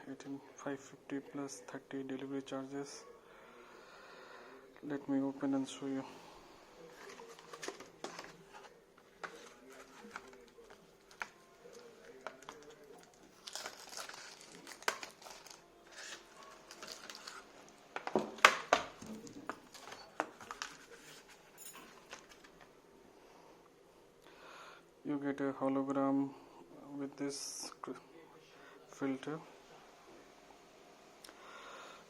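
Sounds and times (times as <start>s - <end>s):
cardboard and plastic rustling: 6.8s - 22.6s.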